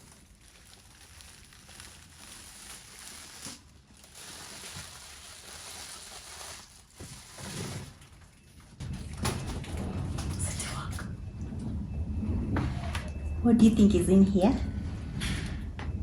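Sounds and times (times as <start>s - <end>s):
gift packaging rustling: 0.0s - 8.1s.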